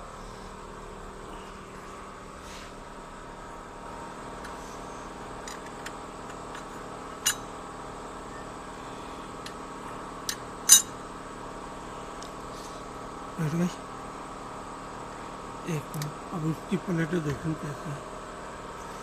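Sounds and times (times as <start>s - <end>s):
steady background hum: 0.0s - 19.0s
sharp metallic clinks: 10.7s - 11.0s.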